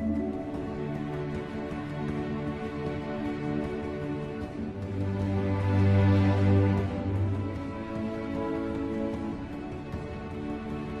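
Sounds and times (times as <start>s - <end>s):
soft new-age instrumental music: 0.0s - 11.0s.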